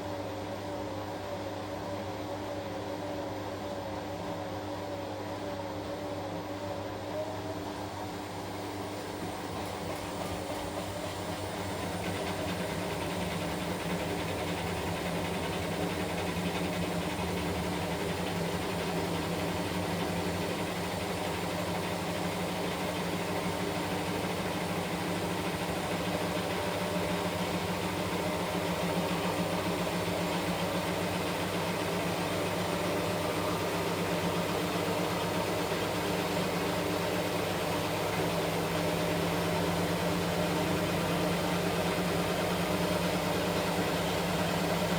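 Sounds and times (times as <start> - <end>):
washing machine running: 0.0 - 44.9.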